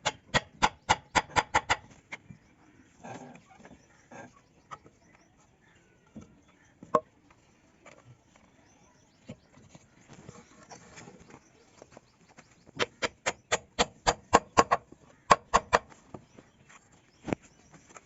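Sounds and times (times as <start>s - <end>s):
hammer tapping on wood: 12.8s - 15.9s.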